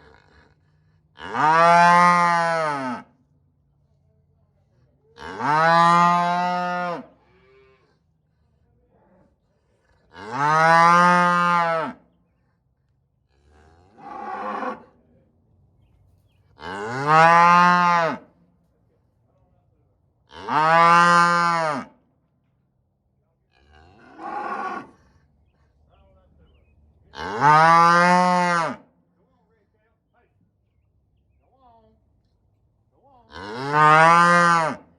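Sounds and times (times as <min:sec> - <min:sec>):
cattle mooing: 0:01.2 - 0:03.1, 0:10.2 - 0:12.0, 0:16.6 - 0:18.2, 0:23.6 - 0:25.0, 0:27.2 - 0:28.8, 0:33.3 - 0:34.8.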